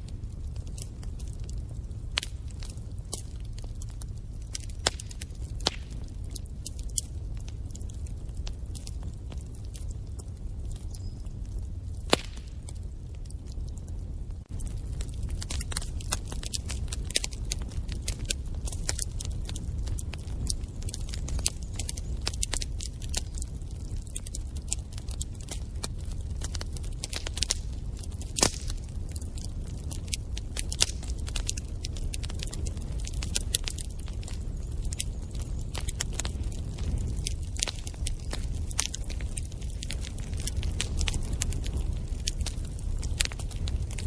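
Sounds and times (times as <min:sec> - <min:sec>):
fire popping and snapping: 0:00.0 - 0:44.0
rumble of flames: 0:00.0 - 0:44.0.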